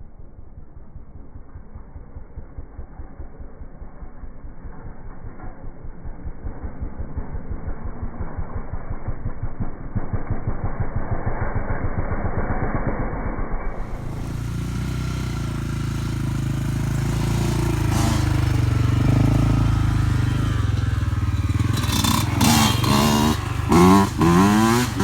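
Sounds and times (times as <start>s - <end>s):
vehicle engine rumbling: 0.0s - 25.0s.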